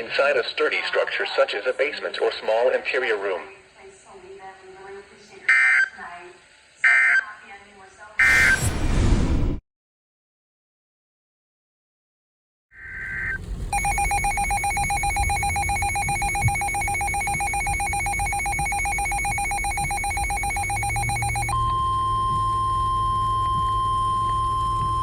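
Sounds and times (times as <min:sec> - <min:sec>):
steady alarm tone: 0:12.8 - 0:25.0
warbling two-pitch alarm beeping: 0:12.8 - 0:25.0.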